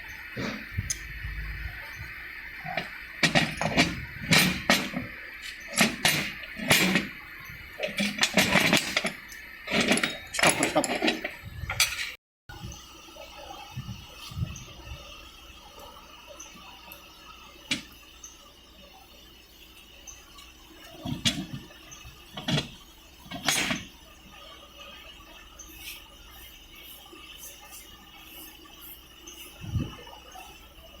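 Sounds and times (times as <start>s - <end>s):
metallic knocks and clinks: 2.7s - 7.1s, 7.8s - 12.1s.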